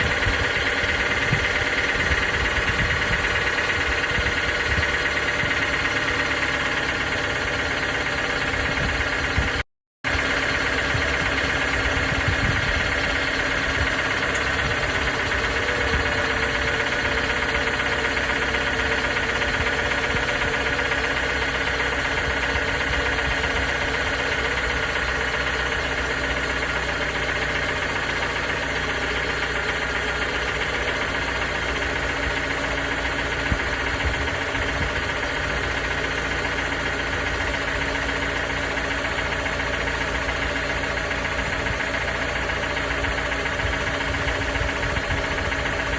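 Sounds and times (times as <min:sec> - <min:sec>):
car engine running: 0:00.0 - 0:45.9
engine knocking: 0:00.0 - 0:45.9.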